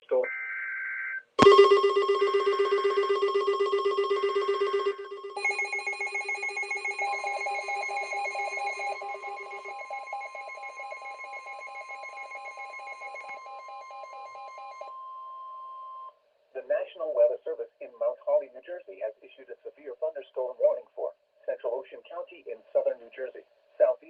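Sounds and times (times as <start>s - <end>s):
alarm bell trill: 1.4s - 14.8s.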